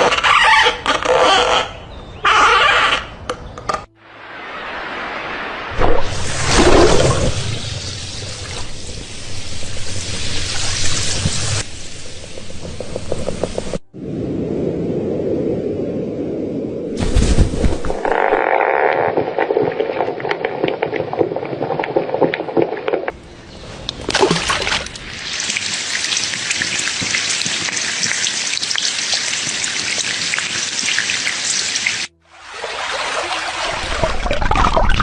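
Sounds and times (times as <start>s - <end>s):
steady hiss: 4.1s - 14.2s.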